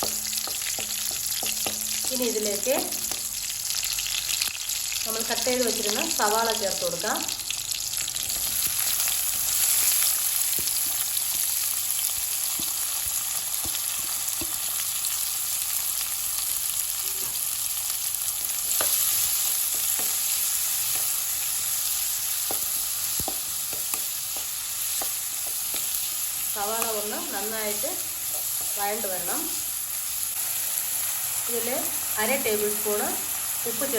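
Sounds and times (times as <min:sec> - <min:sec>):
spoon tapping and scraping: 0:00.0 - 0:03.4, 0:18.6 - 0:21.2, 0:22.4 - 0:26.1
onions sizzling in hot oil: 0:00.0 - 0:33.9.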